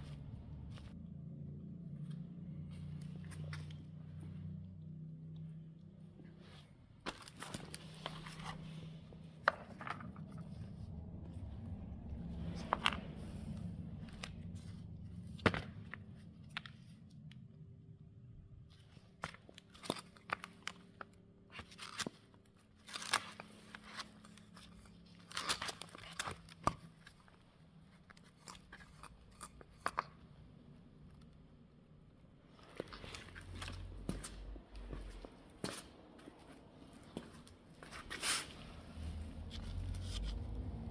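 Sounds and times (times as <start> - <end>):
low steady hum: 0.0 - 40.9.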